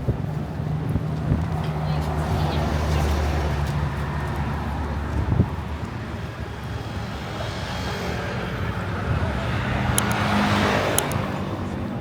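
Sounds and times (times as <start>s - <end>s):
traffic noise: 0.0s - 12.0s
vehicle engine hum: 9.1s - 12.0s.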